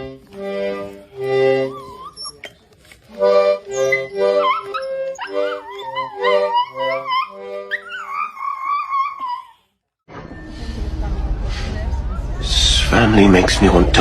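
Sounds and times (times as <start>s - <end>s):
instrumental music chords: 0.0s - 2.0s, 3.1s - 7.7s
dog whining: 0.8s - 10.5s
dog howling: 1.3s - 9.7s.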